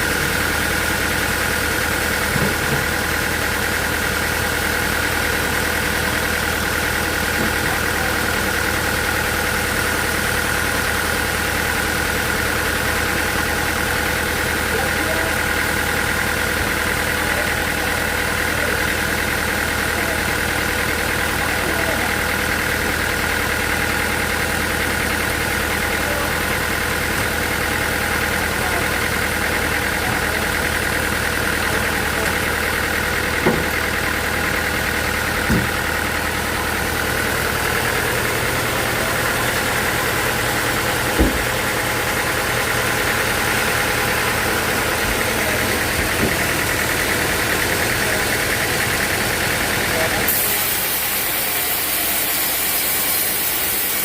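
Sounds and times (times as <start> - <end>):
sawmill motor hum and whine: 11.4 - 54.0
short knock: 41.2 - 41.5.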